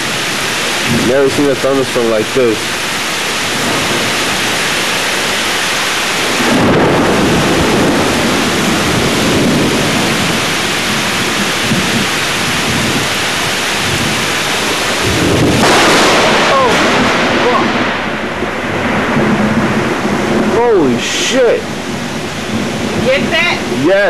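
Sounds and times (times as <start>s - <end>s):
heavy rain pouring: 0.0s - 24.0s
thunder rumbling: 0.0s - 24.0s.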